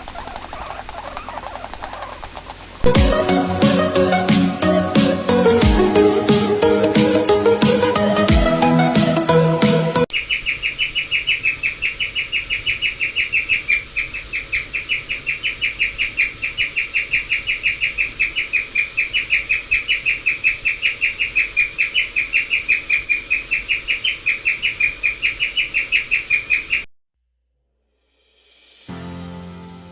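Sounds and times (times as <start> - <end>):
guinea pig chirping: 10.1 - 26.9.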